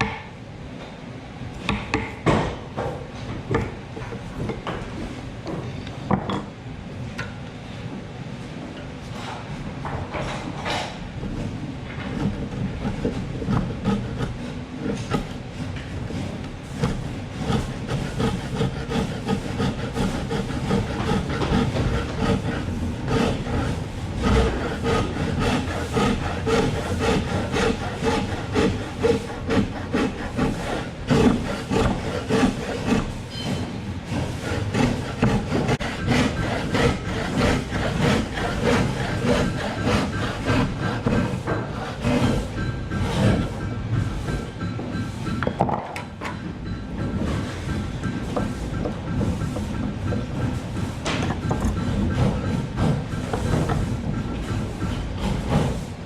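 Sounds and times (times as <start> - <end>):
tool shaving wood on lathe: 11.2 - 44.5, 47.1 - 56.0.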